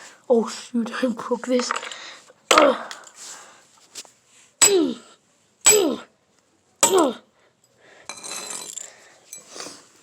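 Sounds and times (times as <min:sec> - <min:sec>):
boy grunting: 0:04.6 - 0:05.1, 0:05.7 - 0:06.1, 0:06.8 - 0:07.3.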